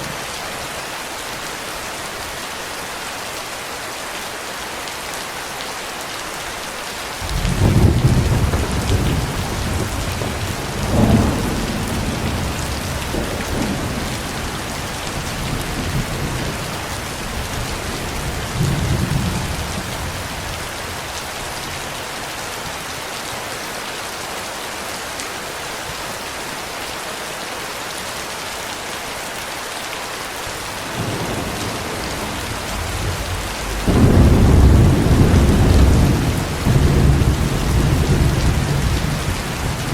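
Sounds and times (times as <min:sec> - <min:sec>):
heavy rain: 0:00.0 - 0:39.9
rolling thunder: 0:07.2 - 0:20.6, 0:30.8 - 0:39.9.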